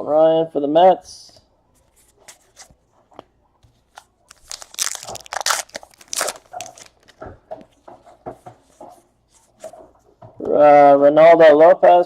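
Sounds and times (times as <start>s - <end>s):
foil wrapper crinkling and tearing: 4.3s - 7.2s.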